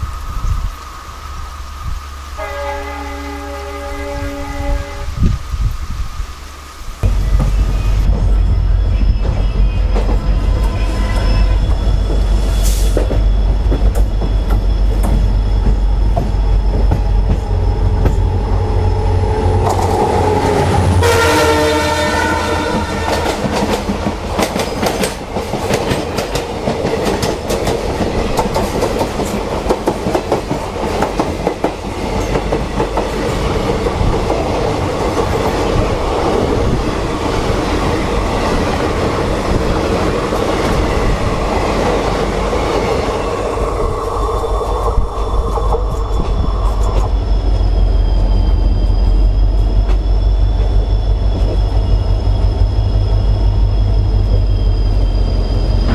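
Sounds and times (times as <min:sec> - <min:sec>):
diesel locomotive engine drone: 0:00.0 - 0:55.9
locomotive horn: 0:02.4 - 0:05.3, 0:09.8 - 0:11.9, 0:19.0 - 0:23.6
train wheels clattering over rail joints: 0:11.6 - 0:18.7, 0:23.0 - 0:35.8.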